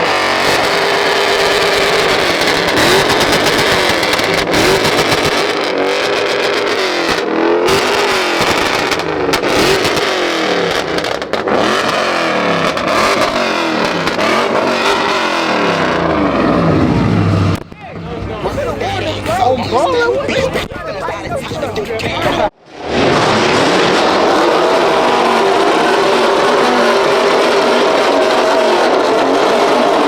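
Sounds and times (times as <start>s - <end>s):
car engine revving: 0.0s - 30.0s.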